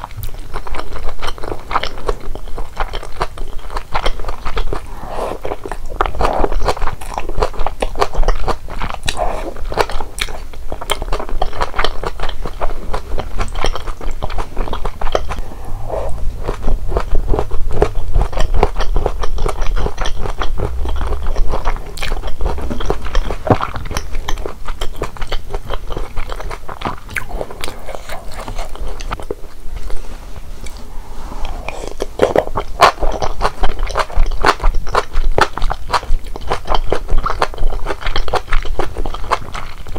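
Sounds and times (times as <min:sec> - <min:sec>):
person chewing crunchy food: 0:00.0 - 0:30.0, 0:30.6 - 0:39.9.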